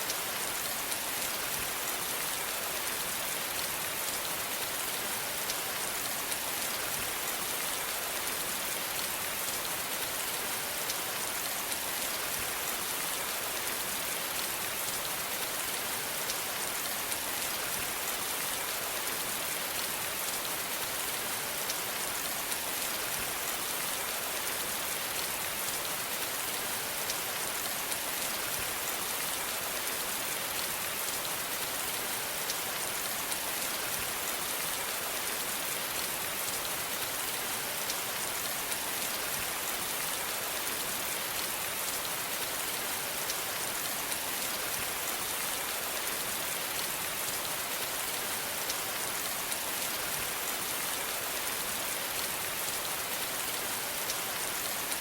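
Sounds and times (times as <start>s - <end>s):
steady rain falling: 0.0s - 55.0s.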